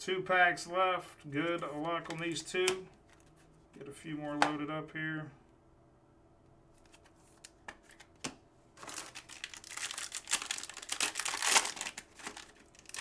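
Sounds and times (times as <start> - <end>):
foil pack tearing: 8.8 - 13.0
foil wrapper crinkling: 8.8 - 13.0.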